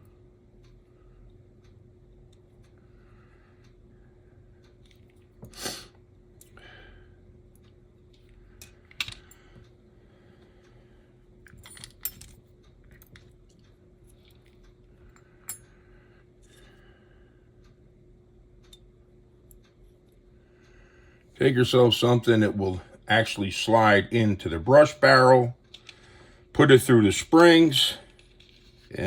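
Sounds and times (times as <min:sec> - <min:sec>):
faint steady hum: 0:00.0 - 0:29.0
small metal parts clicking: 0:08.1 - 0:09.4, 0:11.4 - 0:15.7.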